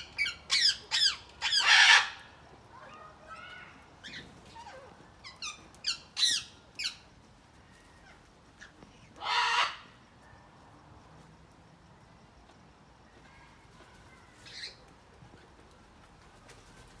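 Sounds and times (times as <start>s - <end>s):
parrots squawking: 0.2s - 2.2s, 9.2s - 9.9s
parrot harsh screech: 9.2s - 9.9s.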